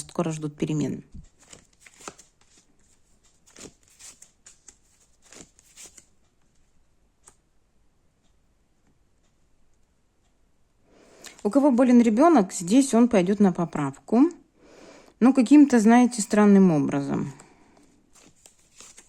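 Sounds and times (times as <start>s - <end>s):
cards shuffling: 1.3s - 6.2s, 18.1s - 19.0s.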